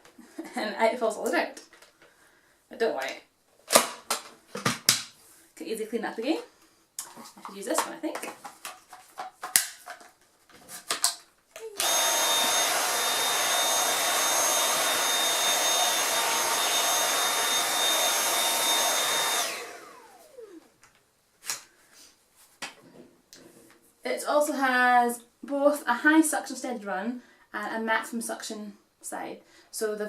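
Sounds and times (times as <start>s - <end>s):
vacuum cleaner motor whine: 11.8s - 20.7s.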